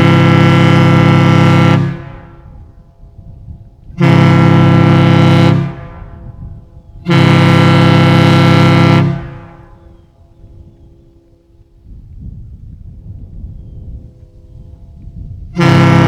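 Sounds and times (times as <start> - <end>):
ship horn blasts: 0.0 - 11.8, 15.0 - 16.0.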